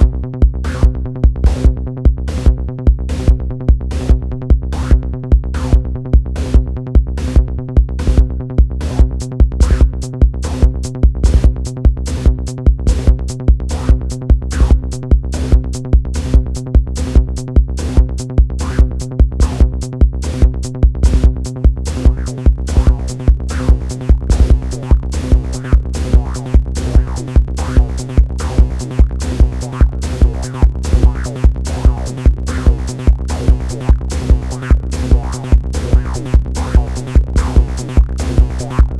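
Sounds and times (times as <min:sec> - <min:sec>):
steady kick drum: 0:00.0 - 0:38.9
low synth drone: 0:21.9 - 0:38.9
synth filter sweeps: 0:21.9 - 0:38.9.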